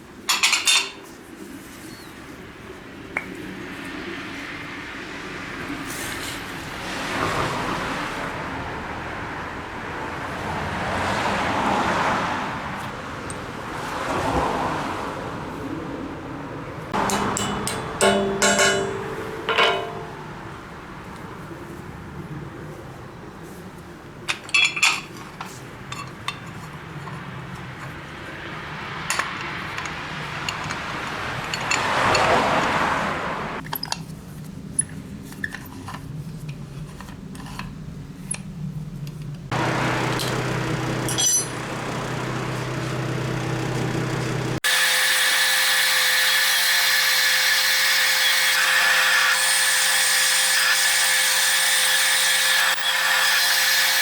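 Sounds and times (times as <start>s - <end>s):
metal tools clinking: 0.3s - 1.0s, 17.0s - 20.5s, 24.3s - 26.6s, 31.4s - 32.4s, 39.7s - 44.3s
power tool running: 39.5s - 54.0s.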